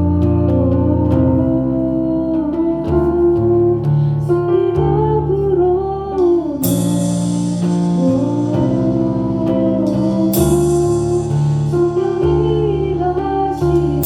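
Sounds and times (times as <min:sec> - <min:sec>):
bass notes: 0:00.0 - 0:14.0
keyboard chords: 0:00.0 - 0:14.0
cymbal crash: 0:06.6 - 0:12.9.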